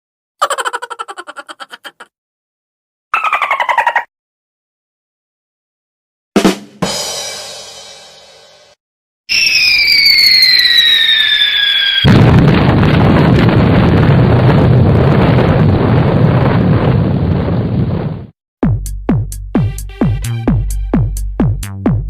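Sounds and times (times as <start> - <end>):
whistle falling in pitch: 9.3 - 12.1
explosion with long rumble: 10.3 - 18.3.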